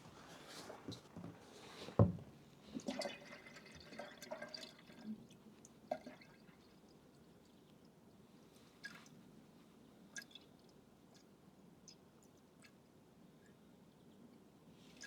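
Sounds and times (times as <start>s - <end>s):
liquid dripping and glugging: 2.8s - 7.6s.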